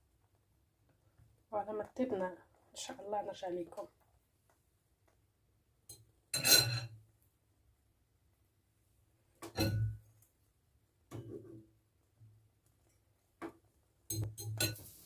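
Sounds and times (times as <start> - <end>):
kitchenware clattering: 6.4 - 7.0, 9.5 - 10.0, 14.1 - 15.0.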